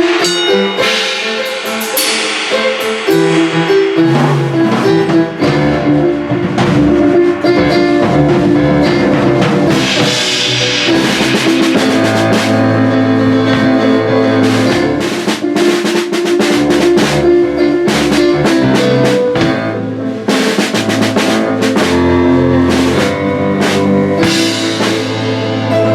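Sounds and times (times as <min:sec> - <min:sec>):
cymbal crashes: 0:00.0 - 0:08.3, 0:08.9 - 0:13.6
drum hits: 0:00.0 - 0:25.9
keyboard chords: 0:00.0 - 0:25.9.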